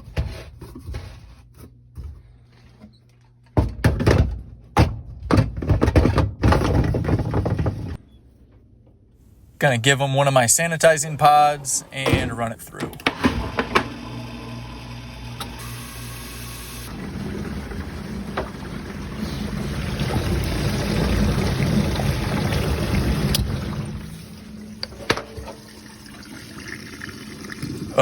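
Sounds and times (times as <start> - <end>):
dishwasher motor hum: 11.8 - 28.0
water rushing and splashing: 16.9 - 24.7.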